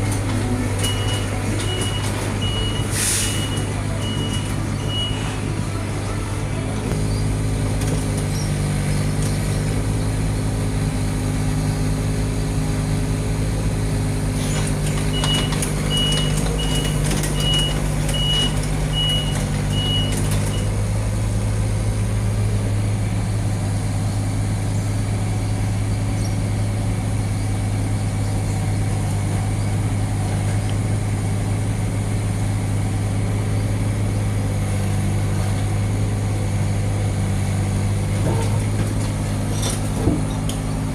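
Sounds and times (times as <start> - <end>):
excavator diesel engine running: 0.0 - 40.9
warning alarm beeping: 0.8 - 5.6.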